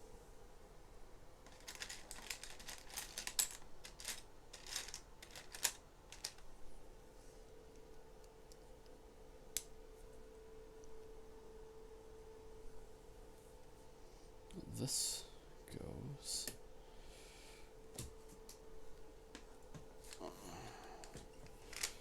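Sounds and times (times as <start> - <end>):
plastic pieces clicking: 1.5 - 6.5, 21.0 - 22.0.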